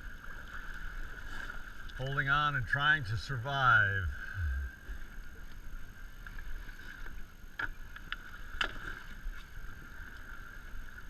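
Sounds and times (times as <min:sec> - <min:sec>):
constant high hum: 0:00.0 - 0:11.0
low rumble: 0:04.0 - 0:05.2.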